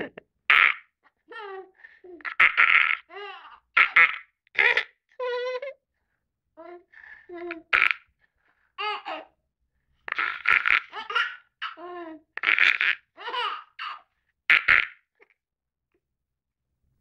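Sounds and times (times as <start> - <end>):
baby laughing: 0.6 - 5.7, 8.8 - 9.3, 10.1 - 15.1
adult making silly mouth noises: 7.4 - 8.1.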